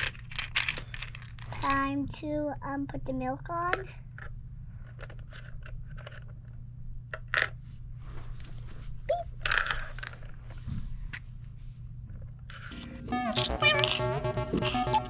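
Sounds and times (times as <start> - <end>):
toy groceries clicking and knocking: 0.0 - 1.8, 3.6 - 7.6, 9.1 - 10.4, 12.5 - 15.0
crinkly rustling: 8.1 - 10.7.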